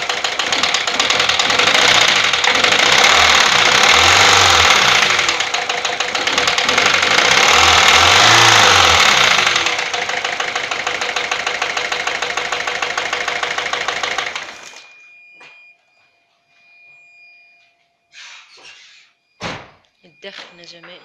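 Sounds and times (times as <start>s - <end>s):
fast regular engine knocking: 0.0s - 14.6s
diesel engine revving and idling: 0.0s - 14.8s.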